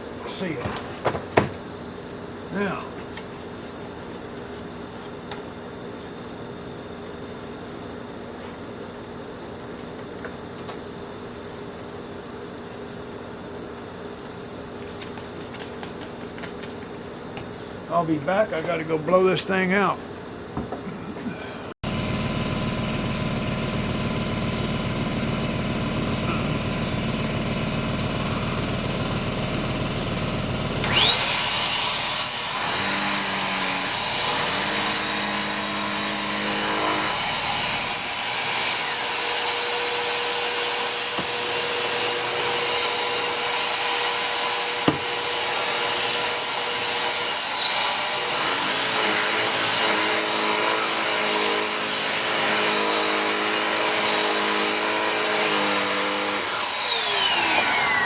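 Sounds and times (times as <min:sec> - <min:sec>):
electric blower motor whine: 0:21.8 - 0:58.0.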